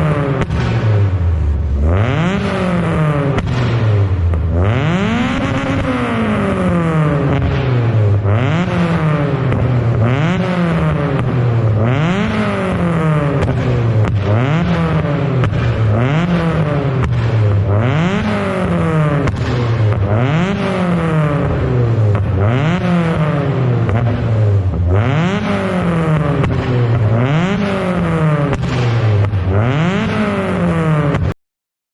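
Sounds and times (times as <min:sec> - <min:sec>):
exhaust pops: 0:00.0 - 0:01.6, 0:02.2 - 0:31.3
car engine revving: 0:00.0 - 0:31.4.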